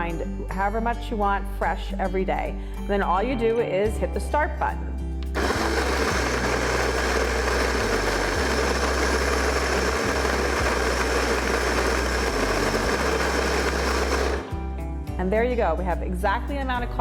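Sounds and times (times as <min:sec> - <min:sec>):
coffee grinder running: 0:05.4 - 0:14.6.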